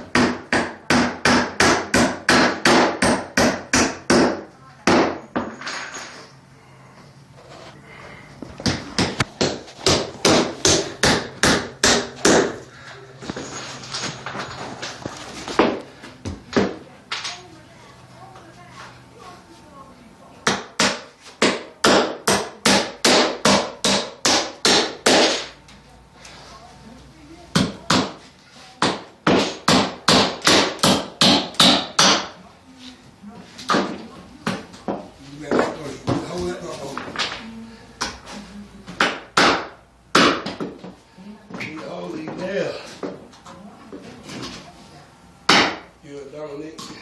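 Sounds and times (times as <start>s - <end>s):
hammer striking nail: 0.1s - 5.2s, 8.6s - 12.6s, 20.5s - 25.5s, 28.8s - 32.3s, 39.0s - 40.7s
hammer driving nail into wood: 20.5s - 25.5s, 28.8s - 32.3s.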